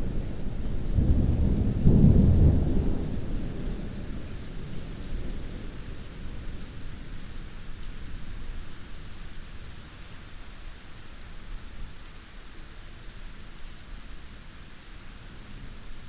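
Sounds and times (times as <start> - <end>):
heavy rain falling: 0.0 - 16.0.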